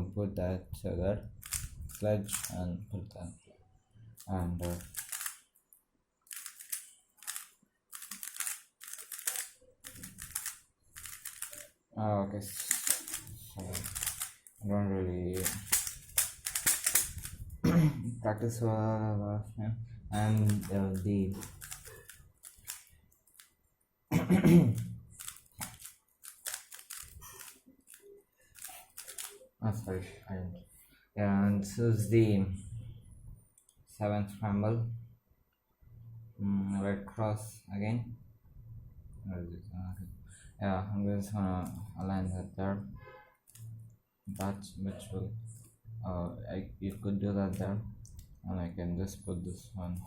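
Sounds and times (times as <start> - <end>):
puzzle cube layers clacking: 1.4 - 2.6, 4.2 - 5.4, 6.3 - 11.7, 12.5 - 14.6, 15.3 - 17.5, 20.2 - 23.5, 25.1 - 29.4
person clearing throat: 17.6 - 18.2, 24.1 - 24.9.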